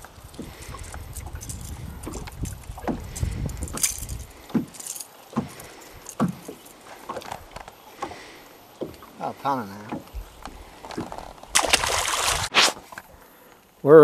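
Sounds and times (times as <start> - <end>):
knocks and rattles from boat: 0.4 - 11.5.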